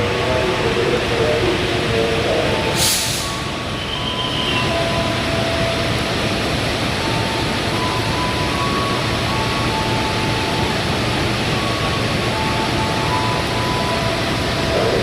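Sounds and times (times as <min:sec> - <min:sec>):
train rumbling: 0:00.0 - 0:15.0
short sharp hiss: 0:02.8 - 0:03.4.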